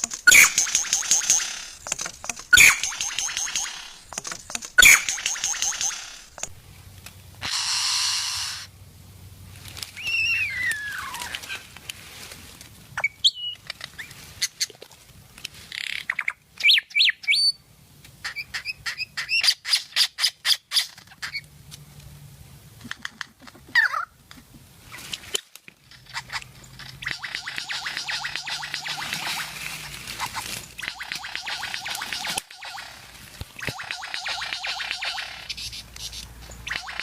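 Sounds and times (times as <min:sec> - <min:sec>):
bird squawking and whistling: 0:00.0 - 0:06.6, 0:10.0 - 0:11.3, 0:27.0 - 0:37.0.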